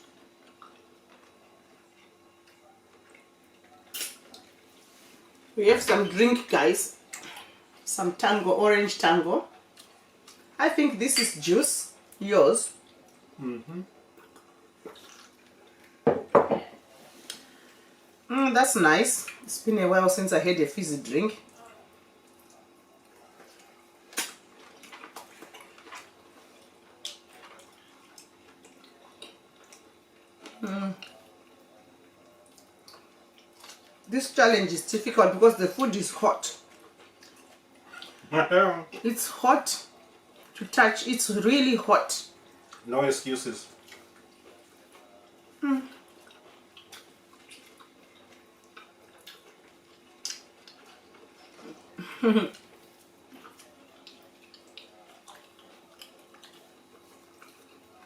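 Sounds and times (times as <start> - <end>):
faint steady hum: 0.0 - 58.0
dishes tapping: 16.0 - 16.7
mouths chewing: 43.7 - 58.0.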